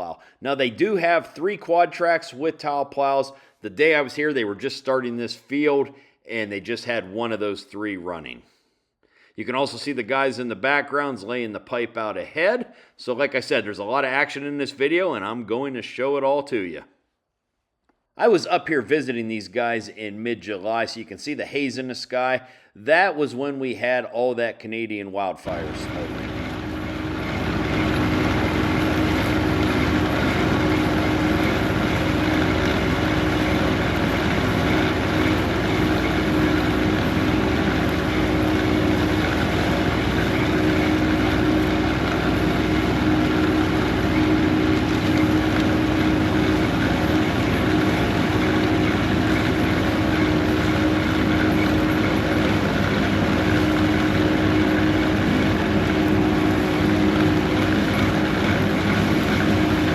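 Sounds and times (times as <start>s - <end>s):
diesel machinery running: 25.5s - 59.9s.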